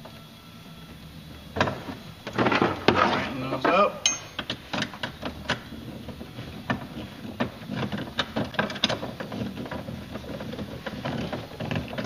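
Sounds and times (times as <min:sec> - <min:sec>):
hand tools clicking and knocking: 0:03.6 - 0:05.6.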